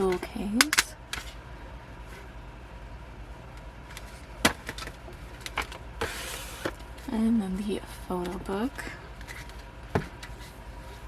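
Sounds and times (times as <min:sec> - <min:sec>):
low steady hum: 0:00.0 - 0:11.0
paper or plastic rustle: 0:09.2 - 0:11.0.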